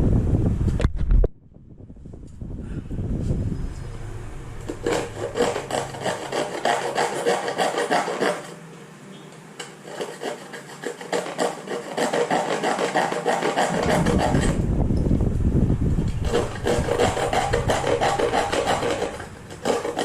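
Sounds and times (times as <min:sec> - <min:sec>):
rapid rubbing strokes: 0:04.6 - 0:08.6, 0:09.8 - 0:14.8, 0:16.0 - 0:20.0.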